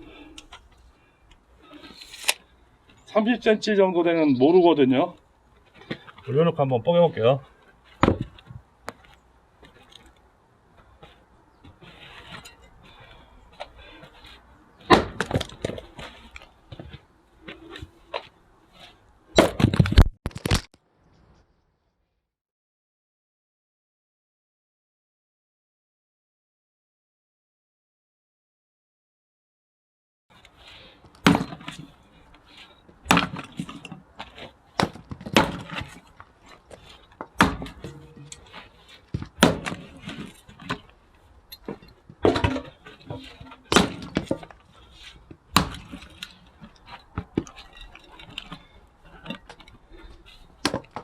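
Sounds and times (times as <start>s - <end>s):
split wood clattering: 1.8s - 2.4s, 41.6s - 44.6s
split wood pieces clattering: 1.8s - 2.4s
axe striking firewood: 1.9s - 2.4s, 14.9s - 15.8s, 33.1s - 33.5s, 34.8s - 35.9s, 37.4s - 38.5s, 39.2s - 40.8s, 42.2s - 44.5s, 45.5s - 46.2s, 50.6s - 51.0s
firewood cracking on chopping block: 37.2s - 38.5s, 39.1s - 40.9s, 41.7s - 44.6s, 45.5s - 48.6s, 50.6s - 51.0s.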